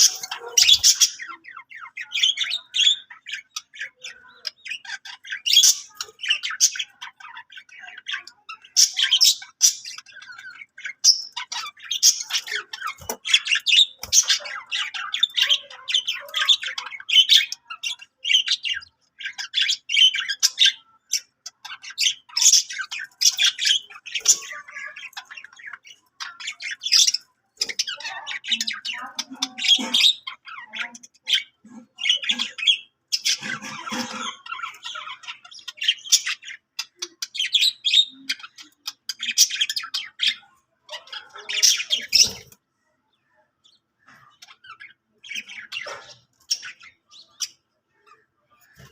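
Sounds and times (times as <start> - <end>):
budgerigar warbling and chattering: 0.0 - 48.9
budgerigar squawks: 27.7 - 35.1.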